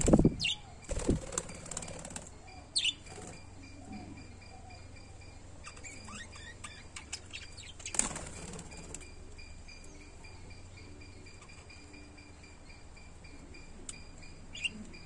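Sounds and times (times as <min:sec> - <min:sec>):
birds chirping: 0:00.0 - 0:15.0
wings flapping: 0:00.9 - 0:02.3, 0:07.8 - 0:09.1.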